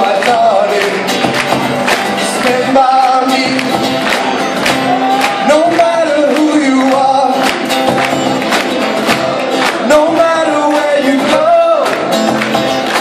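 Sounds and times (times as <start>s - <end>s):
person singing: 0.0s - 1.5s, 2.2s - 7.7s, 9.0s - 12.2s
band playing a song: 0.0s - 13.0s.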